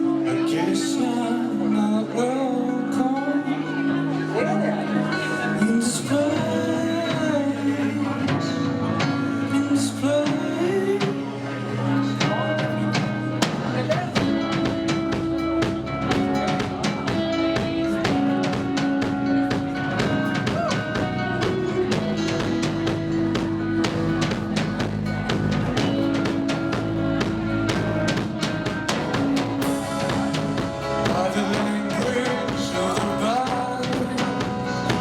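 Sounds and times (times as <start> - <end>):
guitar: 0.0 - 35.0
person singing: 0.0 - 35.0
drum kit: 12.2 - 35.0.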